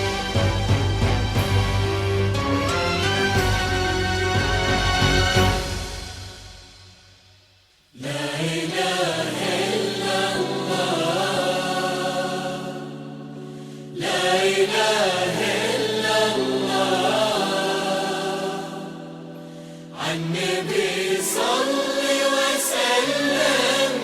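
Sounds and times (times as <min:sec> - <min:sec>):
wedding music: 0:00.0 - 0:24.0
group chanting in unison: 0:07.9 - 0:24.0.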